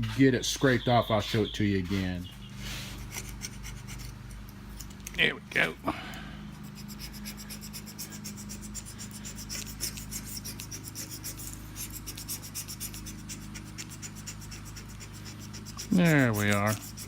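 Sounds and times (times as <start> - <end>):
steady low hum: 0.0 - 17.0
razor blade scraping glue: 2.9 - 4.2, 6.6 - 17.0.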